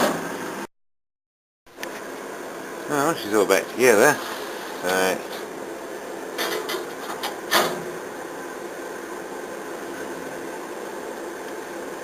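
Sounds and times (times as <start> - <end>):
heater clicks and knocks: 6.3 - 8.0.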